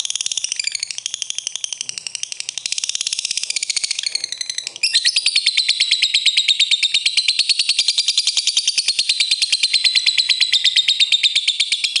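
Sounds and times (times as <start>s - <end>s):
lovebird chattering song: 0.0s - 12.0s.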